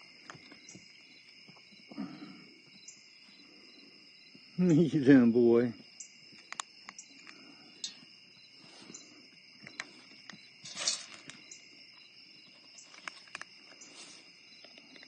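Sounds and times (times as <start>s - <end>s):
crickets chirping: 0.0s - 15.0s
brief rustle: 10.6s - 11.4s.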